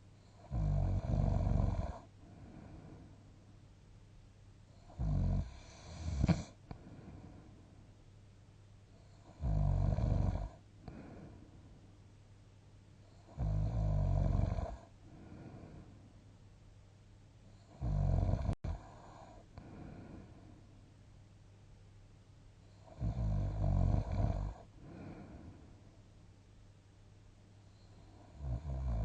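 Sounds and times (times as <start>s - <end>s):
person snoring: 0.4s - 3.0s, 4.8s - 6.6s, 9.2s - 11.4s, 13.2s - 15.9s, 17.6s - 20.4s, 22.8s - 25.6s, 28.2s - 29.0s
soft breathing: 2.0s - 3.6s, 4.7s - 8.0s, 10.8s - 12.0s, 14.7s - 16.2s, 18.7s - 20.8s, 24.4s - 26.2s.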